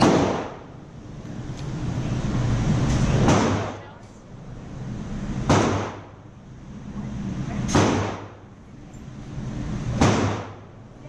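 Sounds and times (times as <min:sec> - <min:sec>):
gunshots: 0:00.0 - 0:00.7, 0:03.2 - 0:03.8, 0:05.4 - 0:06.1, 0:07.7 - 0:08.4, 0:10.0 - 0:10.6.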